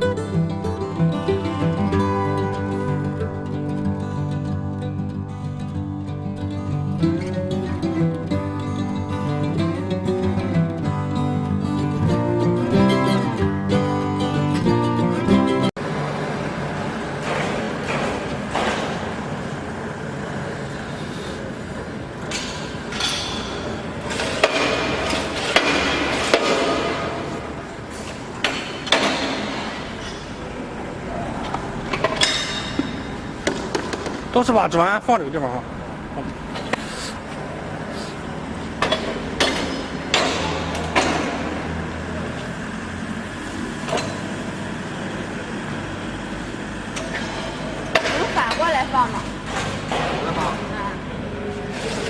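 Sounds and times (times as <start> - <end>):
mechanical background noise: 0.0 - 52.0
knocks and clatters of brick-making: 16.9 - 19.6, 22.2 - 30.4, 31.4 - 34.4, 38.7 - 41.9, 49.4 - 50.7.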